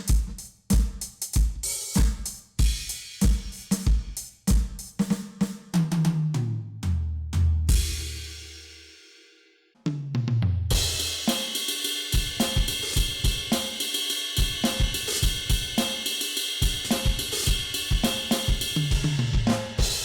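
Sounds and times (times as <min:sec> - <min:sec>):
kick and snare drum groove: 0:00.0 - 0:08.7, 0:09.8 - 0:20.0
ringing cymbals: 0:10.7 - 0:20.0.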